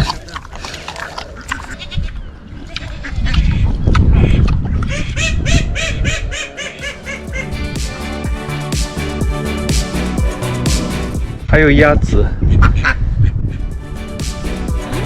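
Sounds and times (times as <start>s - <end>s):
waterfowl honking: 4.9s - 7.6s.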